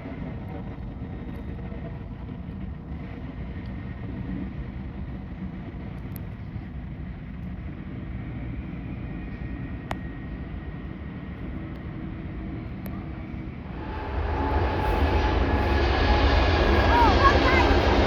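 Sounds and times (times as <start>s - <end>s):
distant jet engines rumbling: 8.4s - 18.0s.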